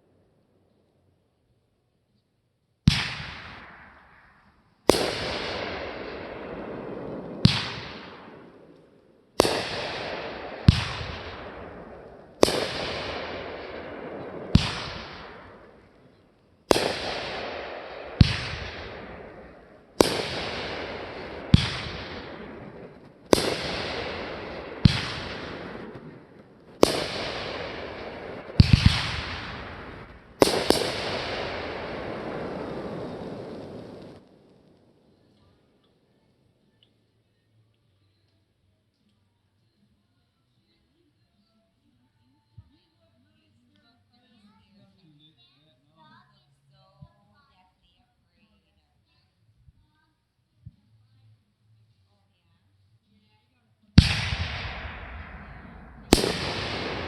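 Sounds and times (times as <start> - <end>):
fireworks banging: 2.9 - 35.0, 54.0 - 57.0.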